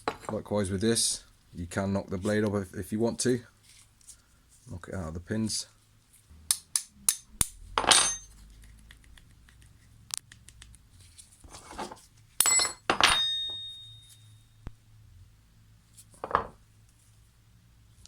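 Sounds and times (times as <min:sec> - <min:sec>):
ringing metallic clanks: 0:12.4 - 0:14.5.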